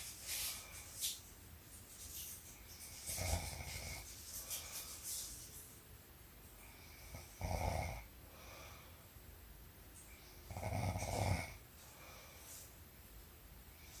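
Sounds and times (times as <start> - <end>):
woman snoring: 7.1 - 8.1, 10.5 - 11.6.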